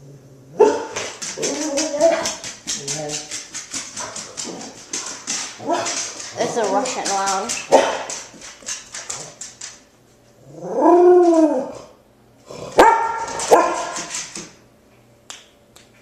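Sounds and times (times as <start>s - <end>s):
dog barking: 0.6s - 1.1s, 7.7s - 8.1s, 12.8s - 14.1s
dog whining: 0.6s - 3.3s.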